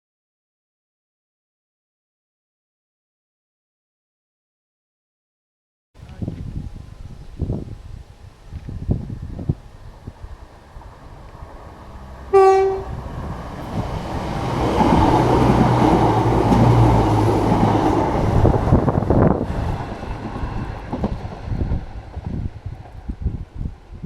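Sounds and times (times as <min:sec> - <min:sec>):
train wheels and engine passing: 0:07.8 - 0:24.0
train horn blast: 0:12.3 - 0:13.0.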